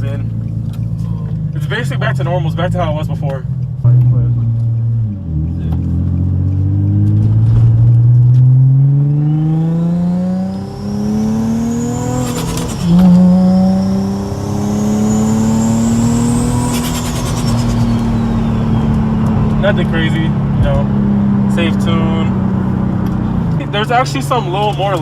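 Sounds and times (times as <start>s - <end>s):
car engine revving: 0.0s - 25.0s
turbo whistle: 10.6s - 19.5s.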